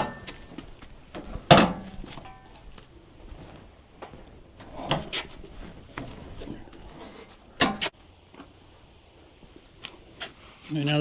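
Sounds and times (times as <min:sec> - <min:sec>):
wood and steel knocks: 0:00.0 - 0:02.9, 0:06.8 - 0:07.9.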